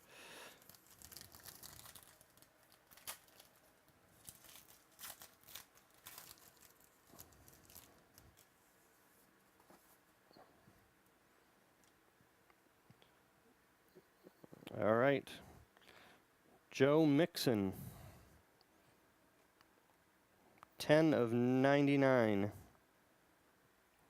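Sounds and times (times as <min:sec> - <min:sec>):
packaging crinkling and tearing: 0:00.0 - 0:08.6.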